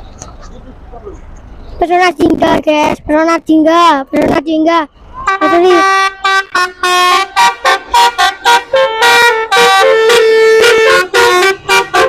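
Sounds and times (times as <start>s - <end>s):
musical bus horn tune: 5.2s - 12.0s.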